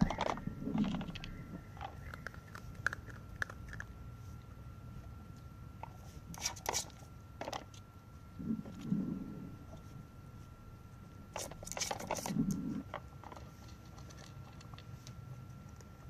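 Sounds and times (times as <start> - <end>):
puppy chewing treats: 0.0 - 4.2.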